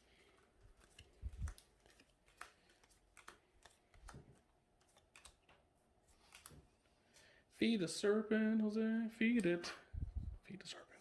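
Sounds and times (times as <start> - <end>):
trading cards clicking and rustling: 0.1 - 6.7.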